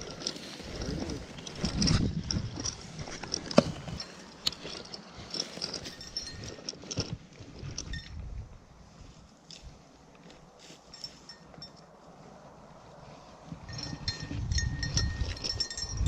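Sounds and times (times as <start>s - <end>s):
footsteps crunching through dry brush: 8.4s - 15.2s.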